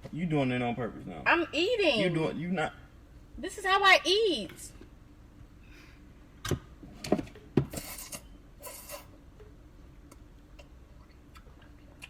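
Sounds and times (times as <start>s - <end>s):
person chewing noisily: 10.1s - 12.0s.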